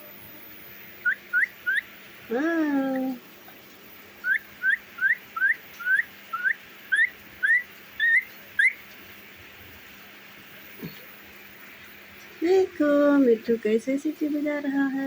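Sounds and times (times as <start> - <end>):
parrot whistling rising notes: 1.0 - 1.9, 4.2 - 8.8.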